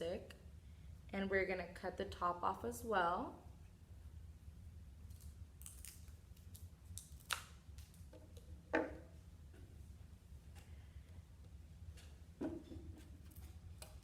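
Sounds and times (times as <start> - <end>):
wooden stick cracking: 5.6 - 8.0.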